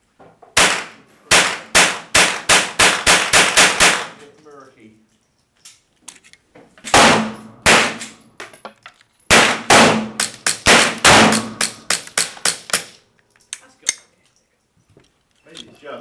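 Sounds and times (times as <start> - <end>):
pistol shots: 0.6 - 4.2, 6.9 - 8.2, 9.3 - 12.9.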